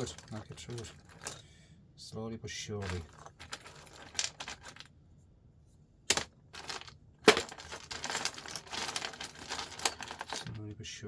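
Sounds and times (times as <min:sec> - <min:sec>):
plastic plugs clattering: 0:02.8 - 0:04.9, 0:06.1 - 0:10.6.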